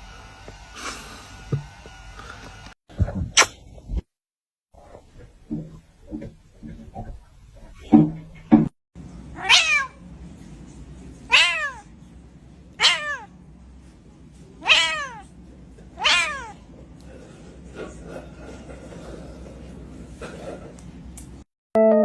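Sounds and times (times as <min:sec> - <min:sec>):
cat meowing: 0:09.4 - 0:10.0, 0:11.3 - 0:11.8, 0:12.8 - 0:13.3, 0:14.6 - 0:15.3, 0:16.0 - 0:16.6.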